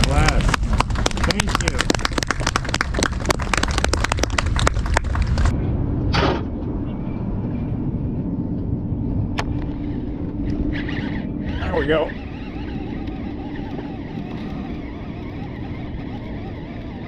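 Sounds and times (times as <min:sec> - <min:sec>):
crowd applause: 0:00.0 - 0:05.5
low engine hum with held tone: 0:00.0 - 0:17.0.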